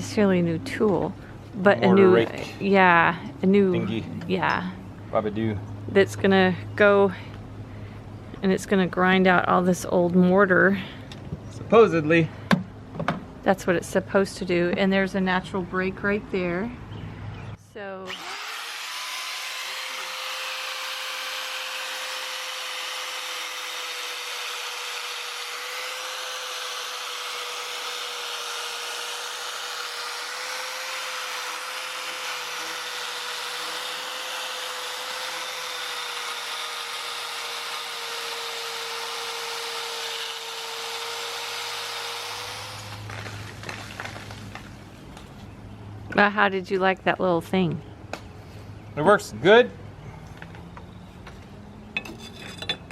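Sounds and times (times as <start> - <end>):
power tool grinding mortar: 18.1 - 44.4.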